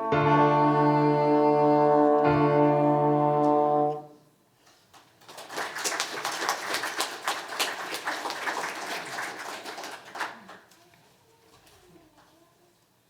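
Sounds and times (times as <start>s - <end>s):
live music chord ringing: 0.0s - 4.2s
audience applause: 5.2s - 10.7s.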